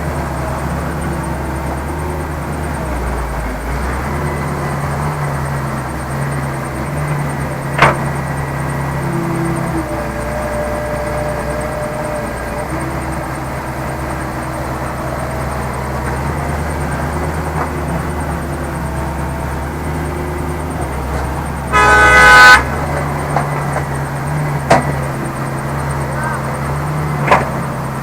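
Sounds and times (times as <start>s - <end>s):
diesel machinery engine running: 0.0s - 28.0s
loud horn honk: 21.7s - 22.9s.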